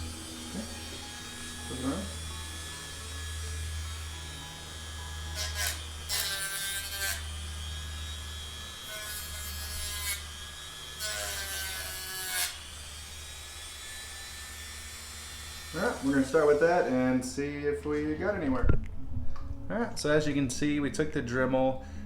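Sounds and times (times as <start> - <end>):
rotary tool grinding metal: 0.0 - 17.2.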